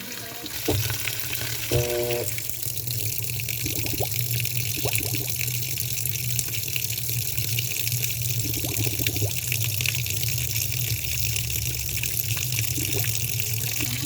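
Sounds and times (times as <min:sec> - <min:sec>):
water rushing into washing machine: 0:00.0 - 0:14.0
short tone: 0:01.7 - 0:02.3.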